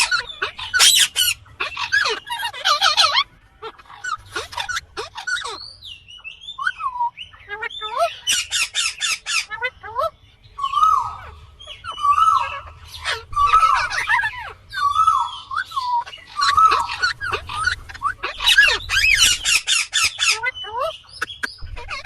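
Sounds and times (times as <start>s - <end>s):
parrot shrill screeches: 0.0s - 5.7s, 10.6s - 21.0s
parrot calling: 0.0s - 22.0s.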